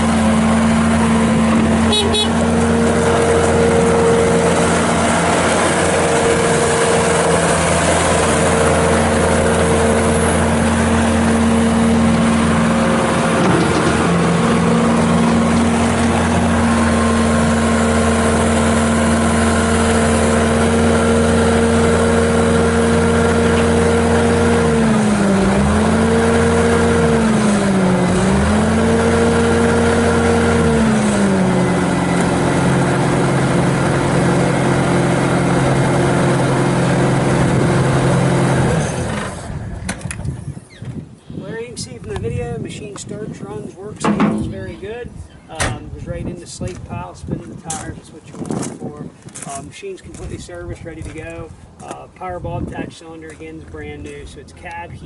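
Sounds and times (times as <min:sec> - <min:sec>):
diesel engine droning: 0:00.0 - 0:40.8, 0:41.4 - 0:55.0.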